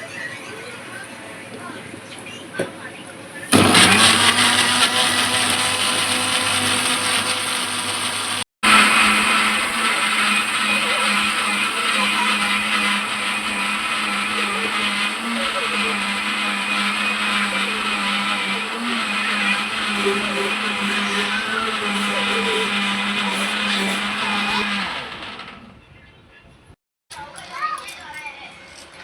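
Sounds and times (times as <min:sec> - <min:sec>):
mixer grinder motor running: 0:03.5 - 0:25.7.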